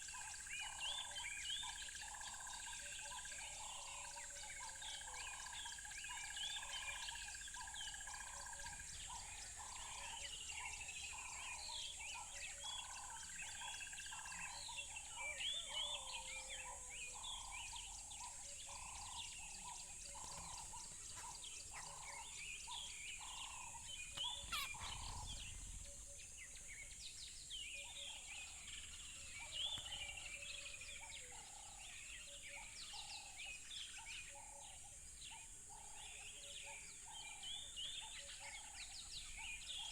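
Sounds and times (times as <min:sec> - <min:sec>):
birds chirping and singing: 0:00.0 - 0:39.9
low bird call repeating: 0:24.3 - 0:25.4.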